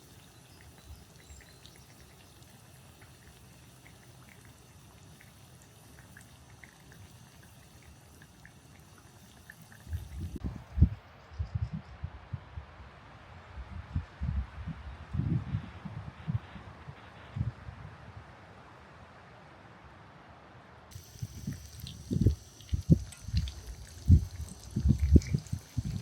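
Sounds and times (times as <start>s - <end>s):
food sizzling in oil: 20.9s - 26.0s.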